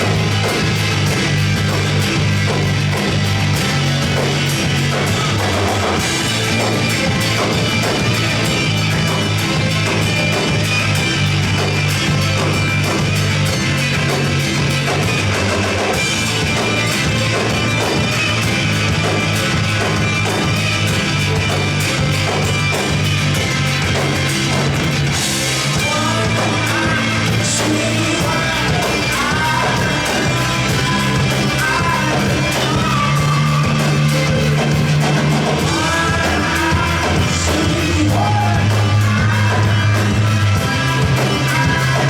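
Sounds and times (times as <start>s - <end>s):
bass line: 0.0s - 42.0s
rock band playing live: 0.0s - 42.0s
person singing: 25.7s - 34.8s, 35.4s - 42.0s.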